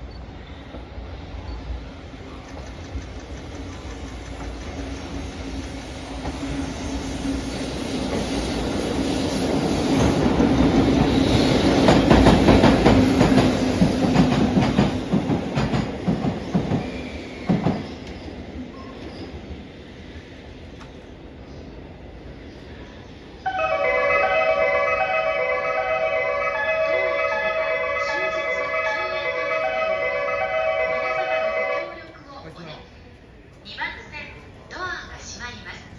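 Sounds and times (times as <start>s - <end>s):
electric locomotive hum: 0.0s - 35.9s
train wheels clacking over rail joints: 2.2s - 18.3s.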